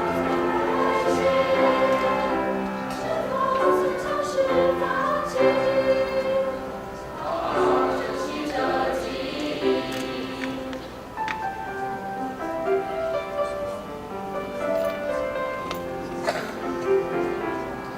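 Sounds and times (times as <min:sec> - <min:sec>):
choir singing in harmony: 0:00.0 - 0:11.2.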